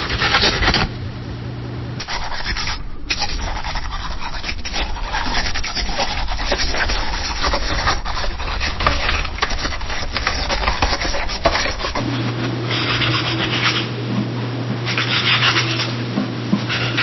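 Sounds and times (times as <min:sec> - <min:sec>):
pencil scratching on desk: 0:00.0 - 0:00.8, 0:02.0 - 0:12.1, 0:12.7 - 0:13.9, 0:14.9 - 0:16.0, 0:16.6 - 0:17.0
steady low hum: 0:00.0 - 0:17.0.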